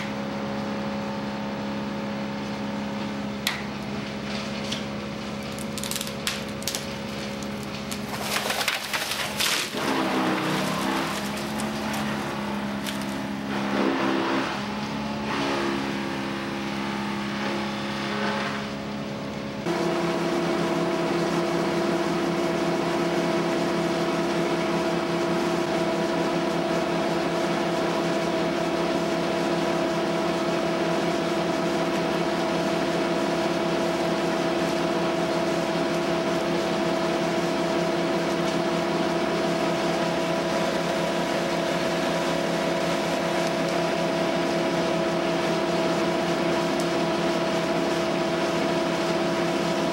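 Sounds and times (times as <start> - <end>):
small engine running: 4.2 - 18.8.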